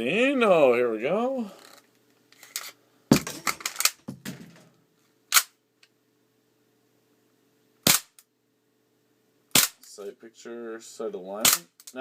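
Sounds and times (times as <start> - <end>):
airsoft pistol shot: 7.9 - 8.1
magazine clicks and clacks: 11.5 - 12.0.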